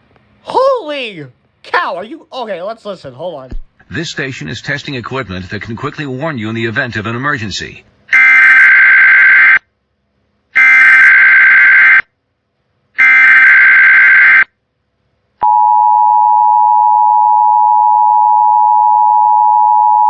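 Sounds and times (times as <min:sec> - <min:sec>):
steady warning alarm tone: 0:13.0 - 0:14.4.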